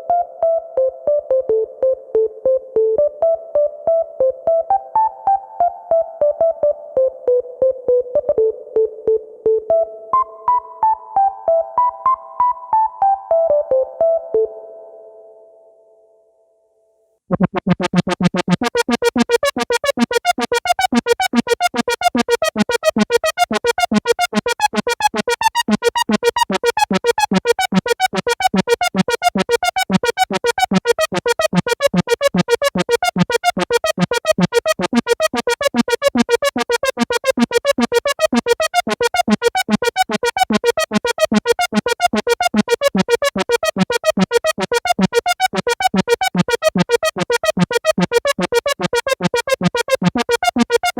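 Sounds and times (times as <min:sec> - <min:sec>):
synthesizer playing repeated notes: 0:17.3 - 0:50.9.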